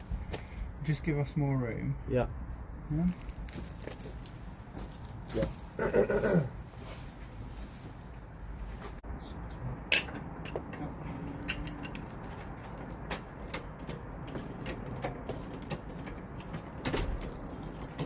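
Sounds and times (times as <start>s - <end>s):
metal tools clicking and knocking: 9.9s - 18.0s.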